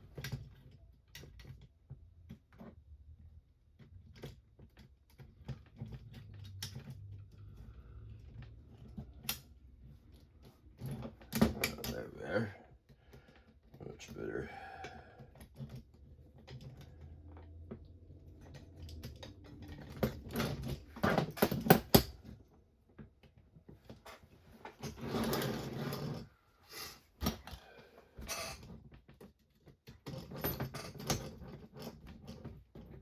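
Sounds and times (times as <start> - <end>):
small parts clicking and clattering: 0.1 - 2.8, 3.6 - 12.1, 14.8 - 23.4.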